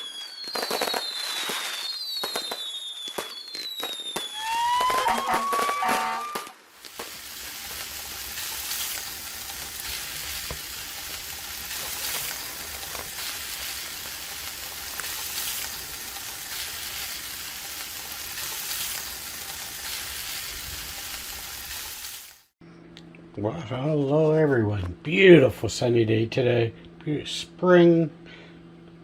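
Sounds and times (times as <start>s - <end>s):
food sizzling on a grill: 5.7s - 22.6s.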